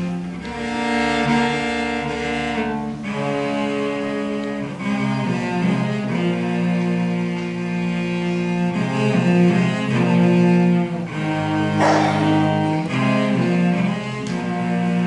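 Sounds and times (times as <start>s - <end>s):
cello and bassoon playing: 0.0s - 15.0s
brief rasping noise: 11.8s - 12.5s.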